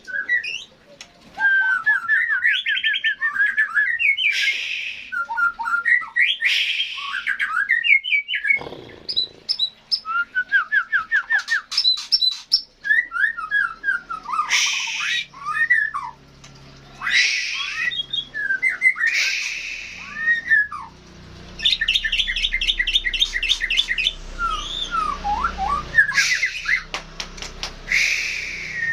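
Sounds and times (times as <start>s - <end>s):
songbird singing trills: 16.8s - 27.0s.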